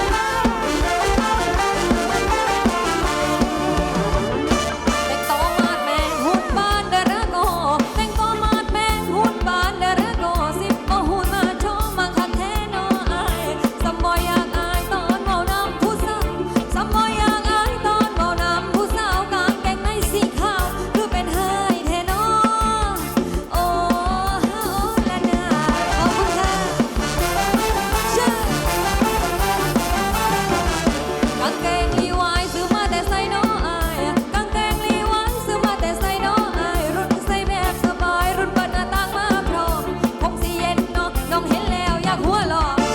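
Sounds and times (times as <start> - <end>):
dance music through loudspeakers: 25.6 - 32.2.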